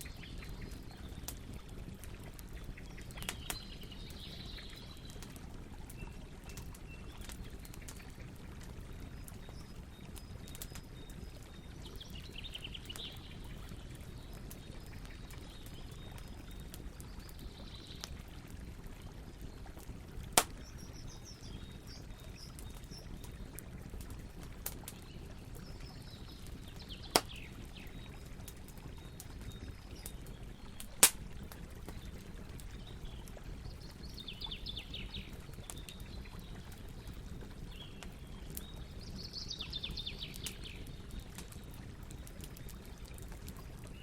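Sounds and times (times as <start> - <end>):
burning wood popping: 0.0 - 10.9, 19.6 - 21.8, 22.4 - 33.2
campfire crackling: 0.0 - 44.0.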